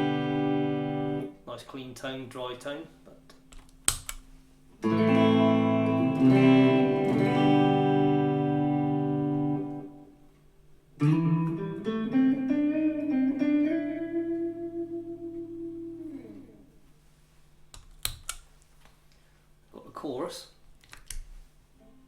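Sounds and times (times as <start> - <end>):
electric guitar strumming clean chords: 0.0 - 1.4, 4.8 - 10.3, 11.0 - 16.8.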